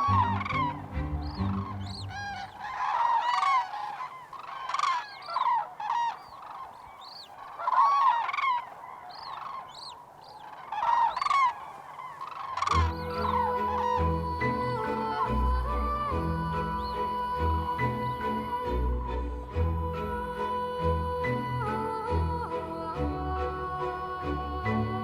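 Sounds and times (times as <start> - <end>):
cranes honking calls: 0.0 - 18.8.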